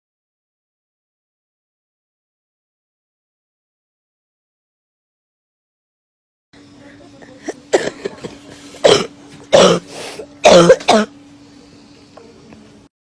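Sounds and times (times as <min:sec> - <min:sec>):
person coughing: 0:07.4 - 0:11.1.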